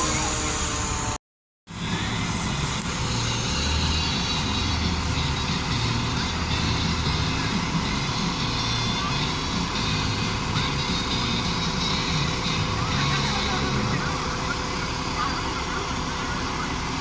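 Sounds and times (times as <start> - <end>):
fire truck engine humming: 0.0 - 17.0.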